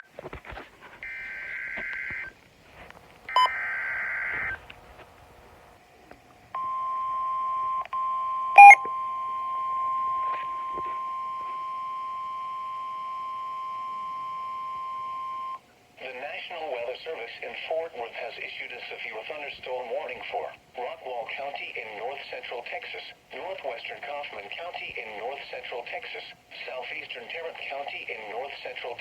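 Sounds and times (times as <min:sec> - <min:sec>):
steady single-pitch alert tone: 0:08.6 - 0:08.9.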